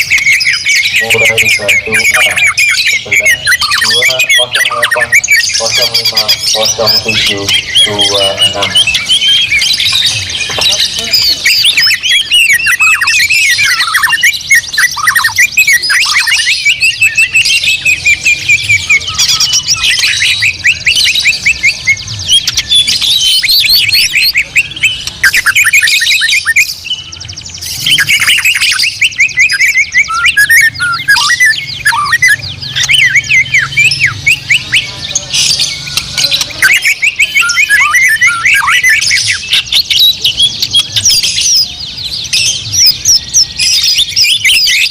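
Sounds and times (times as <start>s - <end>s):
birds singing whistles and chatter: 0.0s - 44.9s.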